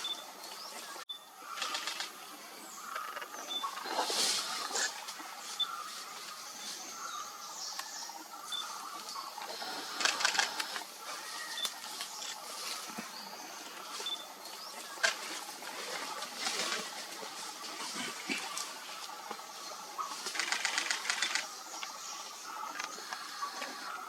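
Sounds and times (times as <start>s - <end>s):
rapid sharp clicks: 20.3s - 21.5s.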